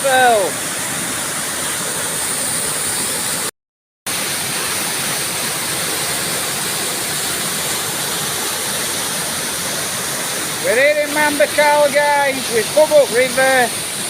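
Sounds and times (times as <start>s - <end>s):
waterfall pouring: 0.0s - 3.5s, 4.1s - 14.0s.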